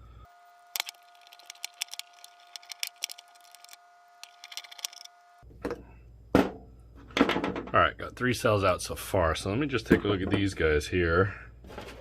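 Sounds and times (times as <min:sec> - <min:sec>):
hand tools clicking and snapping: 0:00.8 - 0:05.1.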